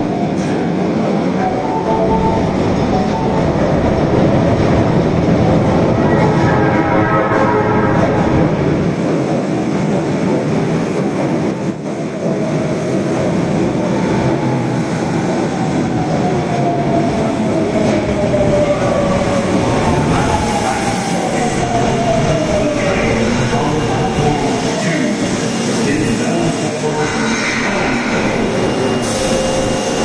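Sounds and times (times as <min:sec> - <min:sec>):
subway train wheels rumbling: 0:00.0 - 0:30.0.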